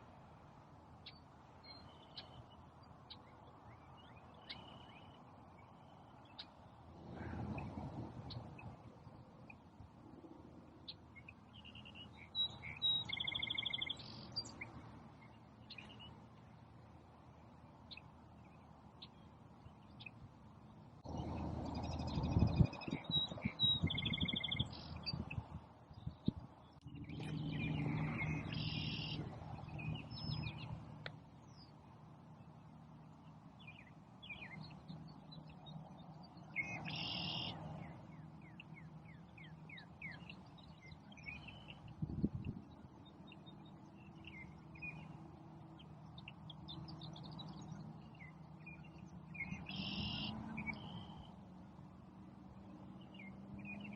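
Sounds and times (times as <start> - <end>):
songbird buzzy trilled song: 0.9 - 6.8, 10.8 - 51.4
faint bird chirps: 1.0 - 7.7, 10.8 - 16.2, 21.7 - 30.8, 33.6 - 45.2, 45.8 - 51.4.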